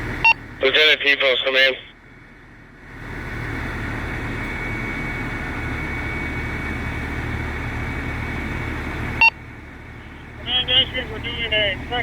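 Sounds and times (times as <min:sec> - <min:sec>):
low engine-like rumble: 0:00.0 - 0:12.0.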